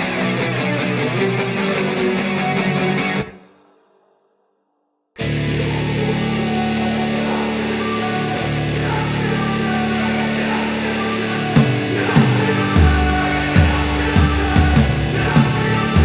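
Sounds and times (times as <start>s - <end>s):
distorted electric guitar chords: 5.2s - 16.0s.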